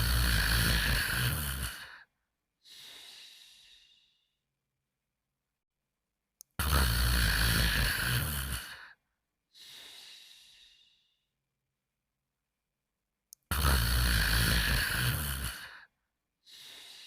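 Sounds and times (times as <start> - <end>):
cartoon snoring: 0.0 - 2.1, 6.6 - 9.0, 13.5 - 15.9.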